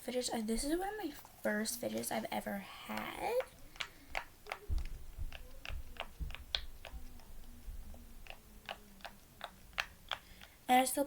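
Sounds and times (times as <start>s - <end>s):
fidget toy bubbles popping: 2.9s - 10.6s.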